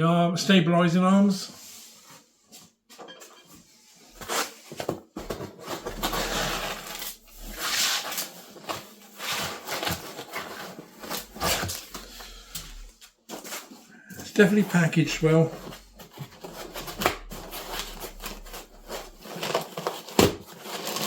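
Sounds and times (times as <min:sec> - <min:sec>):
packaging rustling: 0:04.2 - 0:21.0.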